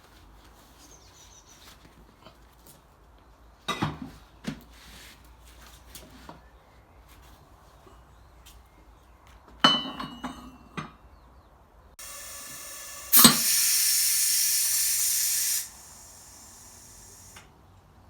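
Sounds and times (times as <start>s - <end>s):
sharp click: 12.0s - 17.4s
steady hiss: 12.0s - 17.4s.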